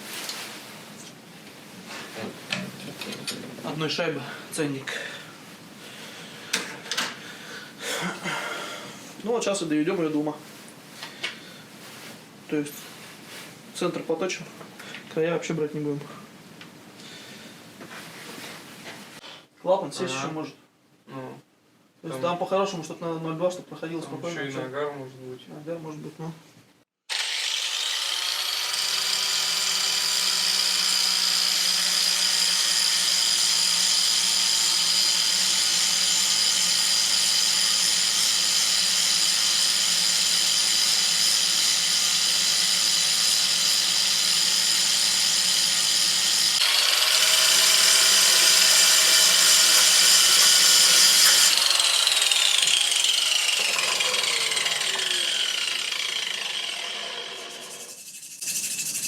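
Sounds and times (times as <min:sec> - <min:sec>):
angle grinder grinding metal: 0:27.1 - 0:59.0.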